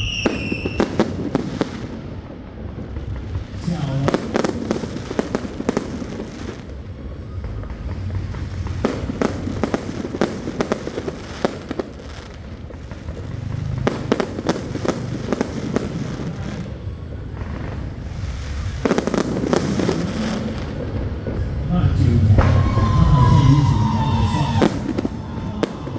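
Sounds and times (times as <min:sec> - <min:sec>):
fireworks bangs and crackles: 0:00.0 - 0:25.9
continuous low rumble: 0:02.6 - 0:25.9.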